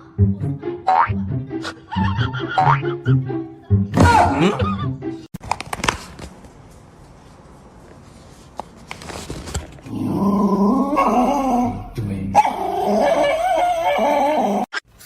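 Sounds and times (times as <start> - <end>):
dog howling: 9.9 - 14.7.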